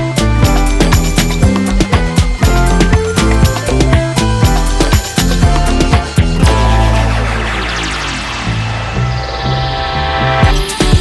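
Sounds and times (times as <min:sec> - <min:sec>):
electronic music with synths: 0:00.0 - 0:11.0
falling synth sweep: 0:02.7 - 0:11.0.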